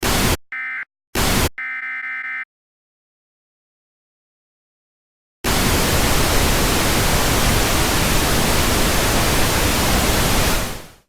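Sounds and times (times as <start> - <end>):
loud static hiss: 5.5 - 11.0.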